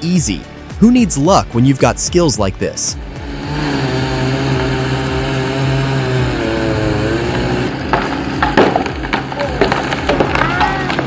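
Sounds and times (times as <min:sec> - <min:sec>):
machinery engine at high revs: 0:03.0 - 0:11.0.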